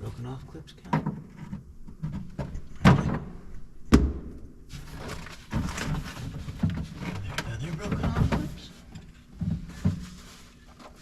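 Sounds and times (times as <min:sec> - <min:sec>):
sharp knocks: 0:03.9 - 0:04.5
quiet handling sounds: 0:04.7 - 0:11.0.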